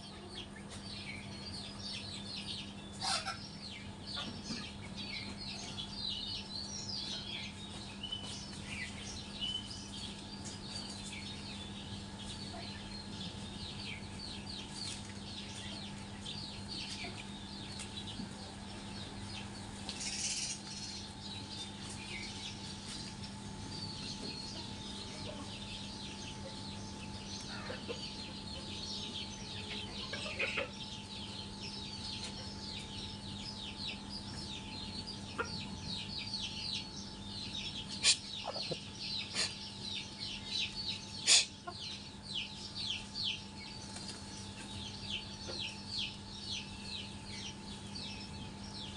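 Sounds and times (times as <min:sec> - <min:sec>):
chicks peeping: 0:00.0 - 0:48.9
steady low hum: 0:00.0 - 0:48.9
hen clucking: 0:02.9 - 0:03.5, 0:27.3 - 0:28.8, 0:29.4 - 0:31.0, 0:35.2 - 0:35.8, 0:38.0 - 0:39.6.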